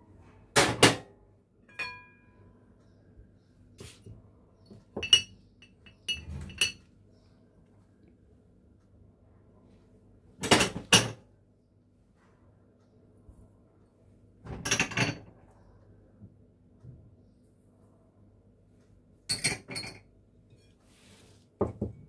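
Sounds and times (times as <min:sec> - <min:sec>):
kitchen clatter: 0:05.0 - 0:06.8, 0:10.4 - 0:11.2, 0:14.5 - 0:15.4, 0:19.3 - 0:20.1.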